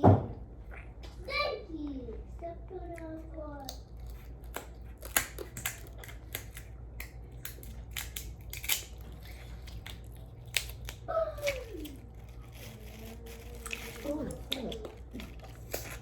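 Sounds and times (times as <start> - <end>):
crab shell cracking: 3.6 - 16.0.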